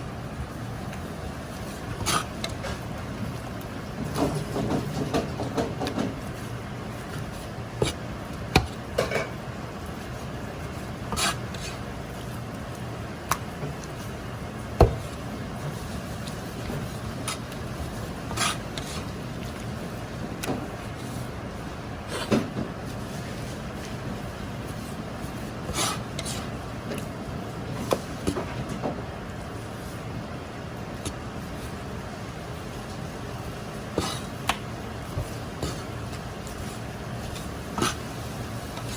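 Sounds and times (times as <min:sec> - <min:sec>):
steady background noise: 0:00.0 - 0:38.9
utensils knocking and scraping cookware: 0:04.0 - 0:06.3.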